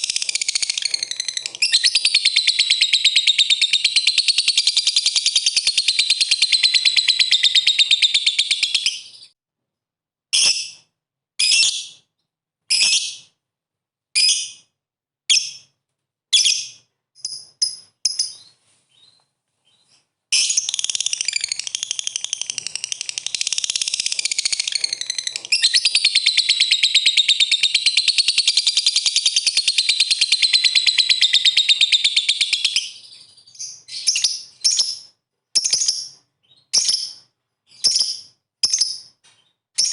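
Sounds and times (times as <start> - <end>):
lovebird chattering trill: 0.0 - 9.3, 20.4 - 33.0
sharp bird chirps: 0.0 - 9.4, 16.4 - 39.9.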